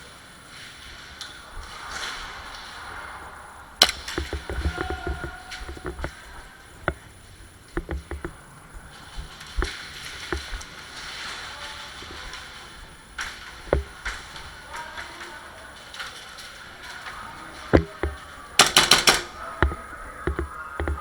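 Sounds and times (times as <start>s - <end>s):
rustling hiss: 0.0s - 21.0s
low thumps: 3.7s - 10.8s, 12.0s - 14.6s, 17.7s - 21.0s
sharp clicks and knocks: 3.8s - 11.2s, 12.0s - 14.5s, 17.7s - 21.0s.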